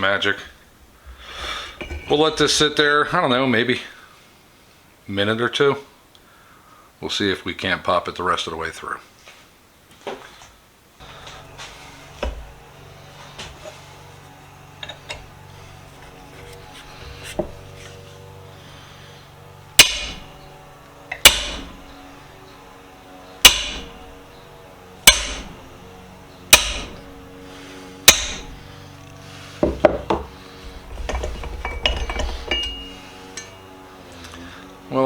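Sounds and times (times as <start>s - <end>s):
light metal clinks and knocks: 1.7s - 2.7s, 29.6s - 33.8s
hammer striking steel punch: 19.7s - 20.5s, 21.1s - 21.8s, 23.4s - 24.0s, 25.0s - 25.6s, 26.5s - 27.1s, 28.0s - 28.6s, 31.1s - 33.6s.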